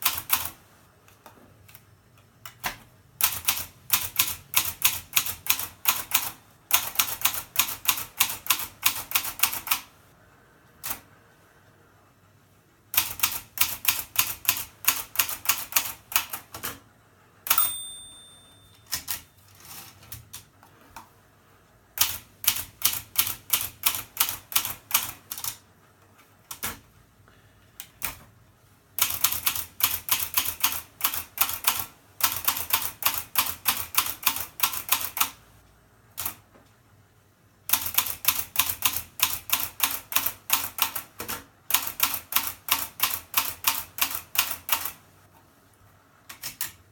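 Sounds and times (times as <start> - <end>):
typewriter keystrokes: 2.4 - 9.9, 13.0 - 16.8, 18.8 - 20.5, 22.0 - 25.6, 29.0 - 35.4, 37.7 - 45.0, 46.3 - 46.8
typewriter bell ringing: 17.5 - 19.5.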